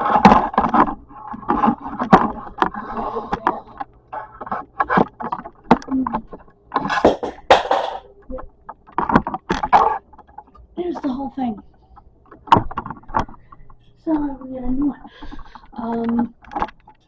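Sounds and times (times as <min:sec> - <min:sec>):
scraping rustling noises: 0:00.0 - 0:08.1
handling clicks and knocks: 0:00.0 - 0:14.6, 0:15.2 - 0:17.0.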